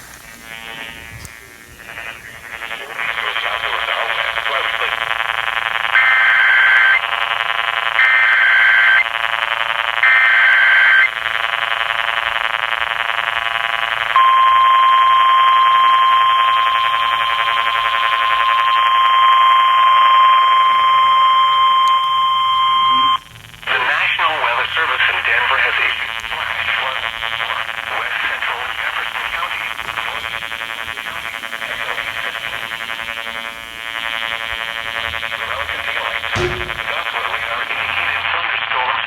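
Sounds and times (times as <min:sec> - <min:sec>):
steady buzz: 0:00.0 - 0:07.8, 0:23.2 - 0:38.3
data burst tones: 0:00.0 - 0:12.2, 0:14.0 - 0:38.3
steady warning alarm tone: 0:00.0 - 0:38.3.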